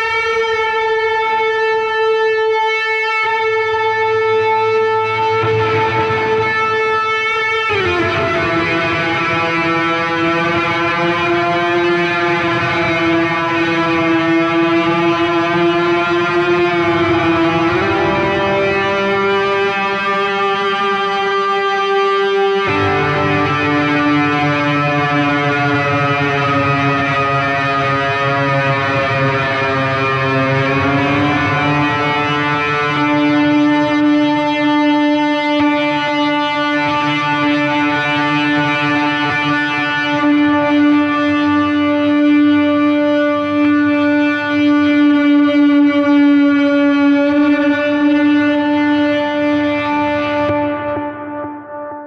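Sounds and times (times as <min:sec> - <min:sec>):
ambient electric guitar drones: 0:00.0 - 0:52.0.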